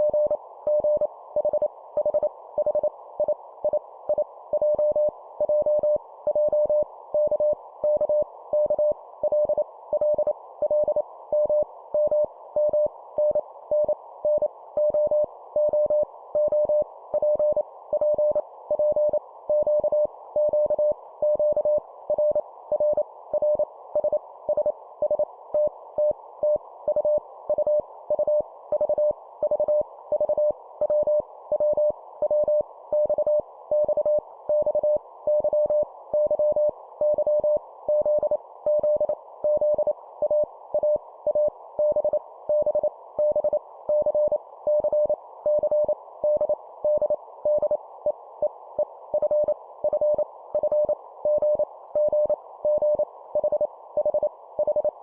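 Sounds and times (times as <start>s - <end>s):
morse code beeps: 49.2s - 54.9s.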